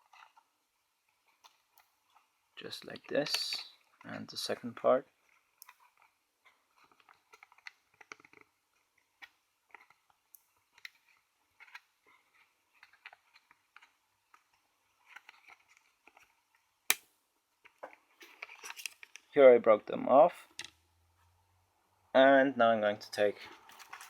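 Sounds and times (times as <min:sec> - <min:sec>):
plastic case clicking and creaking: 0:05.1 - 0:17.0, 0:17.6 - 0:19.3.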